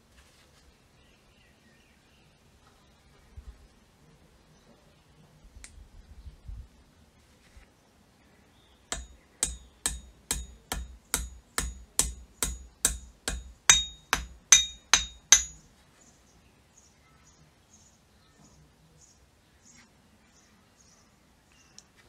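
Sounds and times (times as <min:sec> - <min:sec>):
hammer striking metal: 0:08.9 - 0:15.6.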